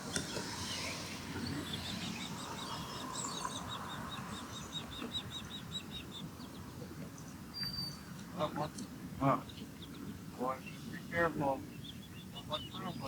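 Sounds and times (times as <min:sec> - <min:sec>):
bird high chirps: 0:00.2 - 0:08.1.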